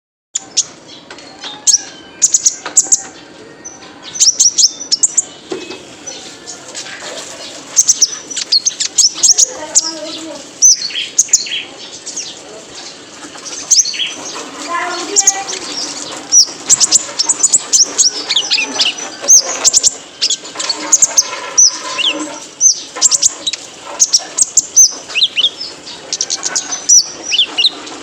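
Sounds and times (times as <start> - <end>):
sunbird chirps and twitters: 0.4 - 28.0.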